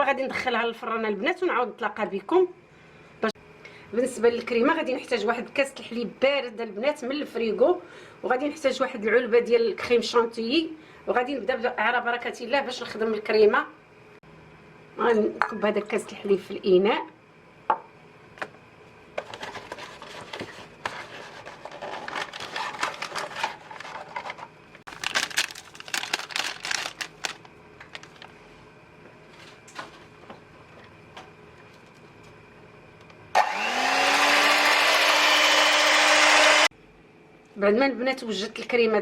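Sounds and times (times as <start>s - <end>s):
rustling and clattering: 19.2s - 28.4s
electric mixer whirring: 33.3s - 36.7s.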